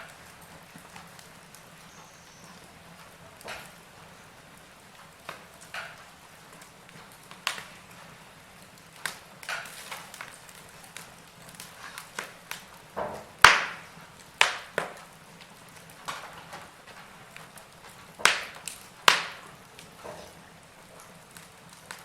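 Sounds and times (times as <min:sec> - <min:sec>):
logs crackling in fireplace: 0:00.0 - 0:22.0
sharp snaps and pops of fire: 0:00.0 - 0:22.0.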